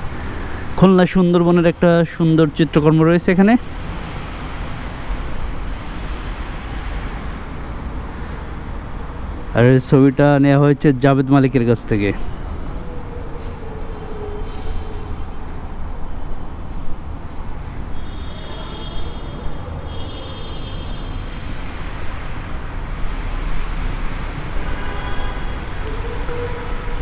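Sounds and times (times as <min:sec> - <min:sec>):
road traffic rumble: 0:00.0 - 0:27.0.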